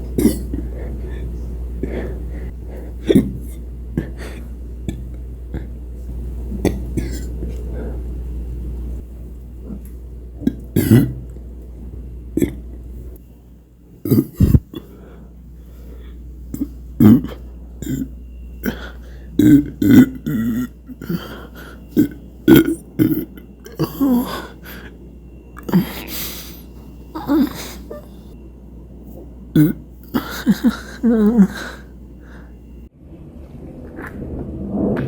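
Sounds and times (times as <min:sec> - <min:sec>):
person burping: 0:00.2 - 0:00.6, 0:10.4 - 0:11.3, 0:12.4 - 0:12.6, 0:14.0 - 0:14.9, 0:16.5 - 0:24.6, 0:29.5 - 0:31.8.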